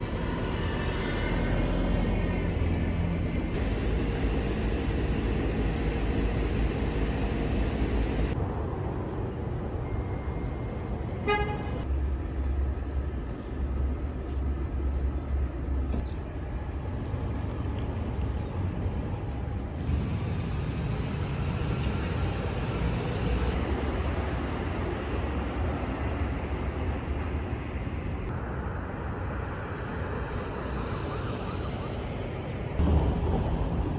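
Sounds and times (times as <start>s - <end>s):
traffic rumble: 0.0s - 33.9s
car horn toot: 11.2s - 11.8s.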